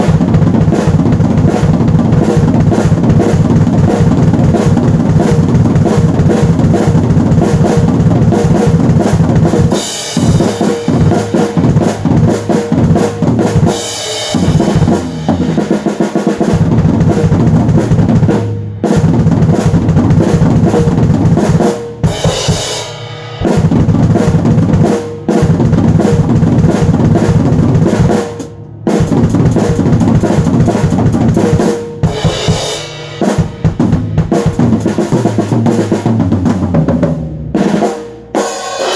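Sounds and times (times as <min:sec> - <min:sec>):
drum kit played hard: 0:00.0 - 0:38.9
bright cymbal washes: 0:32.1 - 0:33.7.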